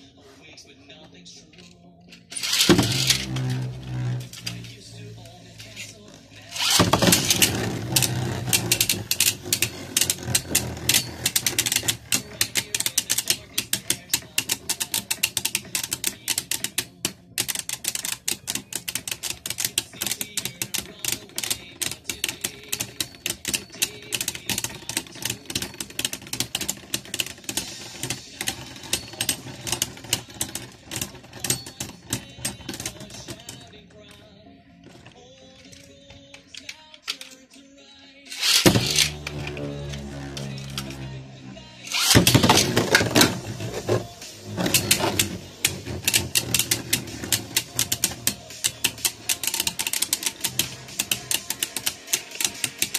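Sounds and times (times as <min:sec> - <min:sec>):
clattering clicks of colliding tops: 0:01.6 - 0:33.7, 0:34.9 - 0:37.6, 0:38.3 - 0:41.0, 0:41.8 - 0:52.9
spinning tops whirring: 0:02.3 - 0:14.7, 0:38.3 - 0:52.9
spinning tops launched: 0:38.3 - 0:40.9.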